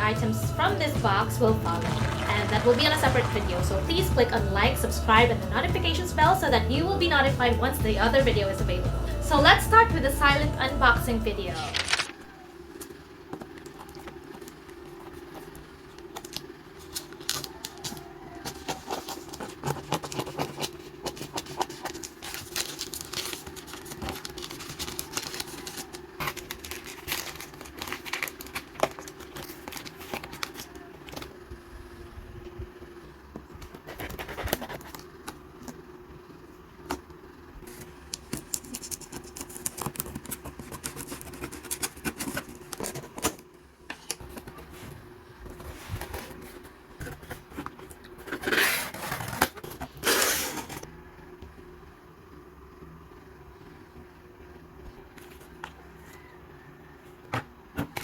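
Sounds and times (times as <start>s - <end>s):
faint steady hum: 0.0s - 58.0s
packaging crinkling and clicking: 15.9s - 31.3s.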